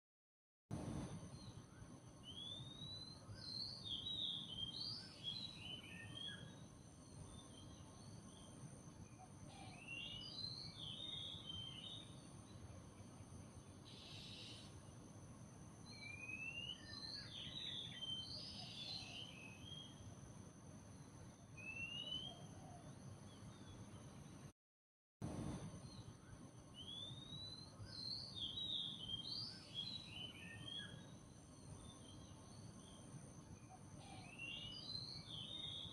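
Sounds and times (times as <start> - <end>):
birds singing: 2.3 - 6.6, 7.2 - 12.7, 13.9 - 14.8, 15.9 - 20.0, 21.6 - 24.4, 26.8 - 33.0, 33.6 - 35.9
steady high-pitched whine: 25.2 - 35.9.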